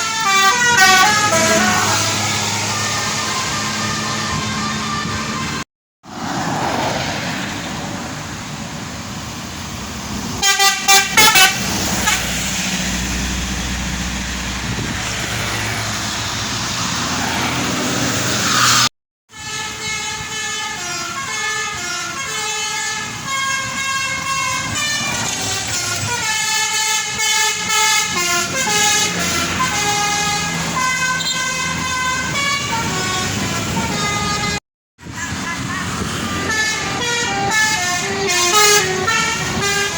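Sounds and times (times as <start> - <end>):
musical air horn tune: 0.0 - 2.2, 10.4 - 12.3, 25.8 - 34.6, 36.4 - 39.9
bus engine and road noise: 0.0 - 39.9.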